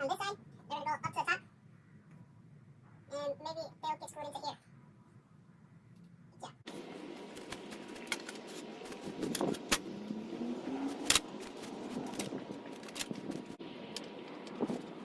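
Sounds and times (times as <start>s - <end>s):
tools and wood clicking: 10.9s - 14.9s.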